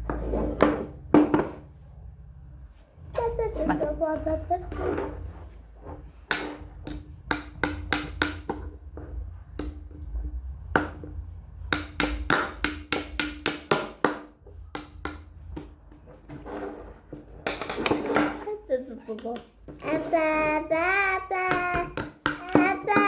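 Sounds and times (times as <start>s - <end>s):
small hammer tapping: 6.3s - 9.8s.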